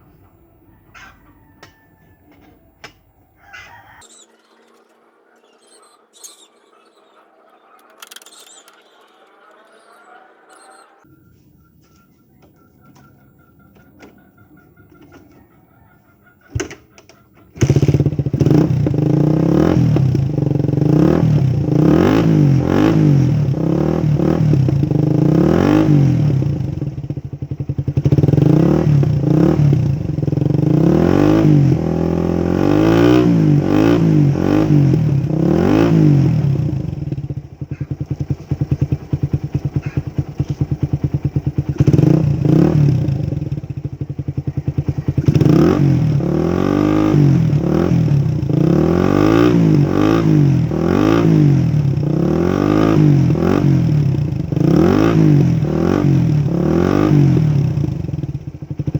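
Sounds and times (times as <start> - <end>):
motorcycle engine revving: 16.4 - 58.9.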